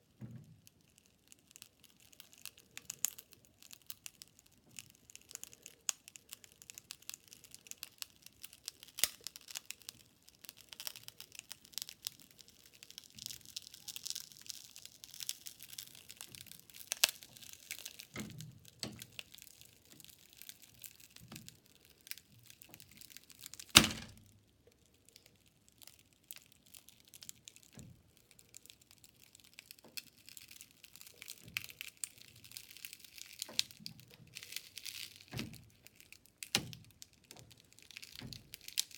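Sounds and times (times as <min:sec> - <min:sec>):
phone glass crackling and snapping: 0:00.1 - 0:38.9
loud crack: 0:23.6 - 0:24.2.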